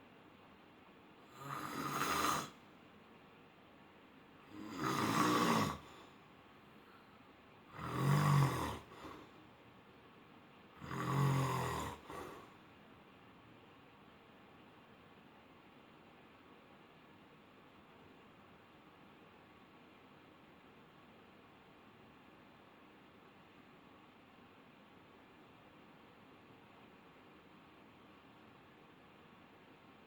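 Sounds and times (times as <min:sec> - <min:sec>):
person snoring: 0:01.3 - 0:02.6, 0:04.5 - 0:06.2, 0:07.7 - 0:09.4, 0:10.8 - 0:12.6.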